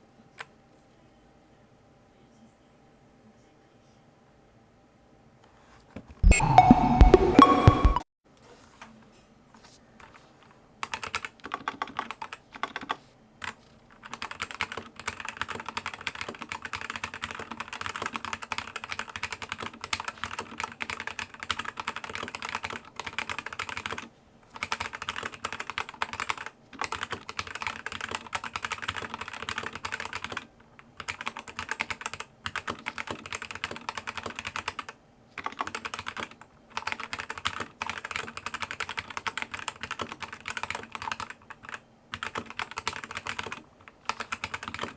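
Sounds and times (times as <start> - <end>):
mechanical keyboard typing: 10.8 - 44.9.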